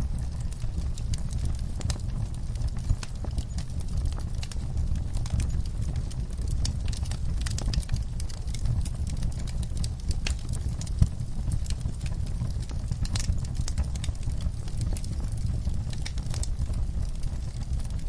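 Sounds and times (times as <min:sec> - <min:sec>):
log fire crackling: 0:00.0 - 0:18.0.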